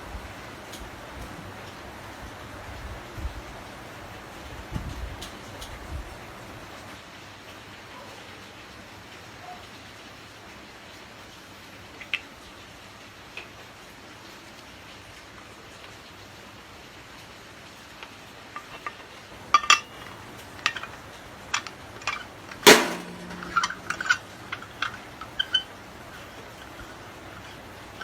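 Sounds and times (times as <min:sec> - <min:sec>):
metal tapping and clinking: 0:18.6 - 0:28.0
loud ringing metal knock: 0:21.6 - 0:25.6.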